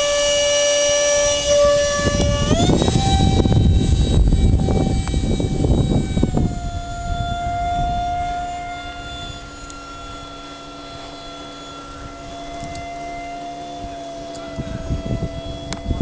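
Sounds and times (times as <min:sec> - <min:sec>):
electric fan motor whining: 0:00.0 - 0:16.0
rush of air: 0:01.3 - 0:08.1.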